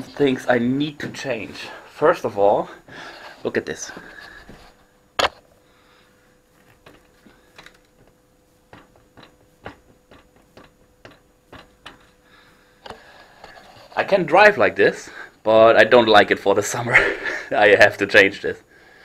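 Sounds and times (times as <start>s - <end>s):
faint steady hum: 0.0s - 19.0s
light irregular clicks and taps: 6.6s - 12.1s.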